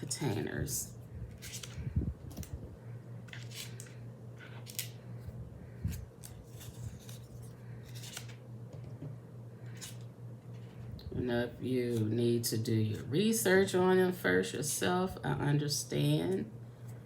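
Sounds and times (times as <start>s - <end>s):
fan humming: 0.0s - 17.0s
crisp rustles and clicks: 5.7s - 8.4s.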